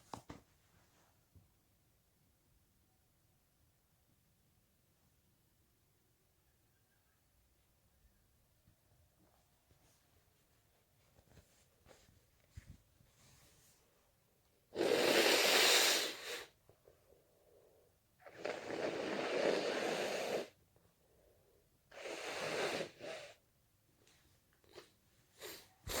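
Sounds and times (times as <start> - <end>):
faint sniffs: 14.7 - 16.6, 17.4 - 20.6, 21.4 - 23.4, 24.7 - 26.0
person blowing stuffy nose: 14.7 - 16.6, 18.3 - 20.6, 21.9 - 23.4, 24.7 - 26.0.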